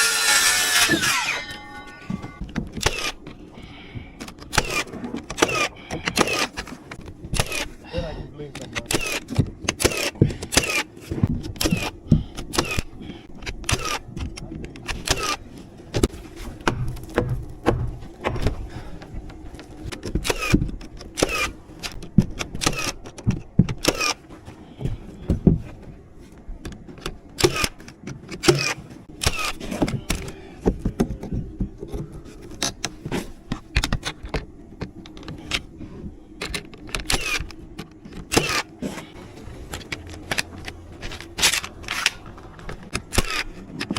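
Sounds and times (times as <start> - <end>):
steady low hum: 0.6 - 43.9
nails driven into wood: 2.4 - 3.3, 4.2 - 7.8, 8.8 - 18.6, 20.0 - 24.2, 27.0 - 30.8, 36.4 - 38.7, 42.9 - 43.9.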